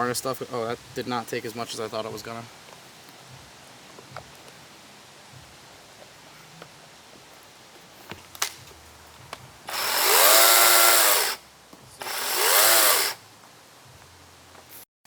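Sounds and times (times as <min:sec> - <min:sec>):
electric chainsaw motor whine: 0:09.7 - 0:11.4, 0:12.0 - 0:13.2.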